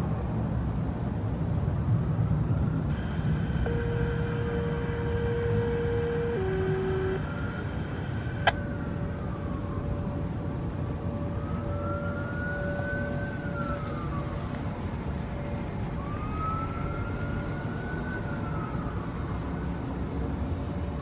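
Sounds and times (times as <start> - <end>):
low outdoor rumble: 0.0 - 21.0
steady low tone: 2.8 - 18.6
warning siren wailing: 2.9 - 21.0.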